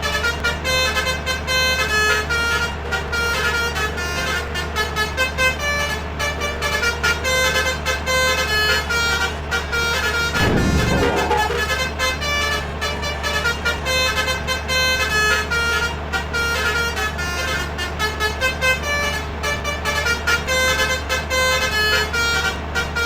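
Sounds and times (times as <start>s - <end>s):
bus musical horns: 0.0s - 23.0s
steady low drone: 10.3s - 12.2s.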